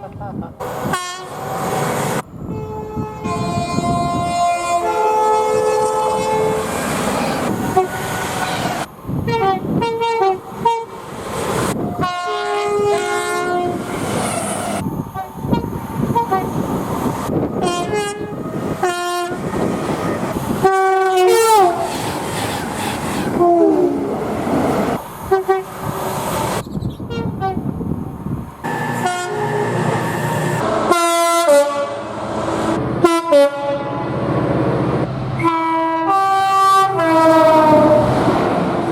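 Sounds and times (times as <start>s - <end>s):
trains running on rails: 0.0s - 38.9s
train horn blasts: 0.8s - 1.4s, 2.4s - 6.8s, 7.7s - 8.7s, 9.3s - 11.0s, 12.0s - 13.8s, 15.2s - 16.5s, 17.6s - 19.4s, 20.6s - 22.0s, 23.3s - 24.1s, 25.3s - 25.7s, 27.1s - 27.6s, 28.7s - 32.2s, 33.0s - 34.2s, 35.4s - 38.2s.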